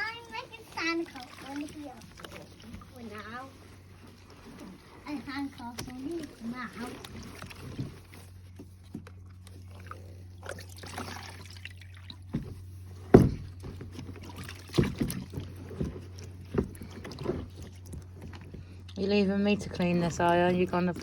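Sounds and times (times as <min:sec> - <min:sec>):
low steady hum: 0:00.0 - 0:21.0
cloth wiping: 0:01.4 - 0:08.8
vacuum parts knocking: 0:12.2 - 0:21.0.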